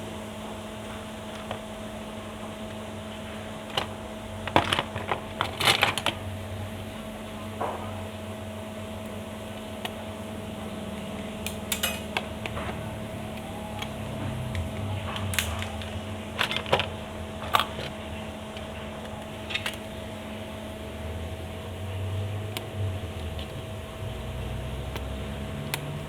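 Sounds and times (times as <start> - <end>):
steady hum: 0.0 - 26.0
small metal tools clicking: 11.7 - 12.0.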